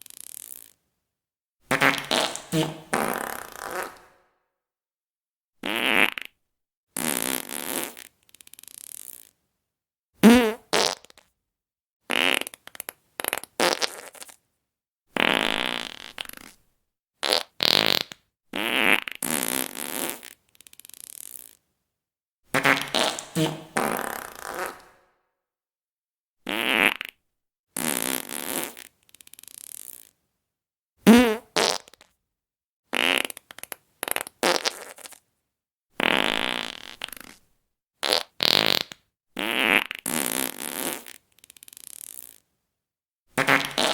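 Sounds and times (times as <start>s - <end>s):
fart sounds: 0.0s - 0.8s, 1.7s - 4.3s, 5.6s - 6.4s, 7.0s - 9.4s, 10.2s - 11.2s, 12.1s - 14.4s, 15.2s - 16.6s, 17.2s - 21.6s, 22.5s - 25.2s, 26.5s - 27.2s, 27.8s - 30.2s, 31.0s - 32.2s, 32.9s - 35.2s, 36.0s - 37.4s, 38.0s - 42.5s, 43.4s - 43.9s.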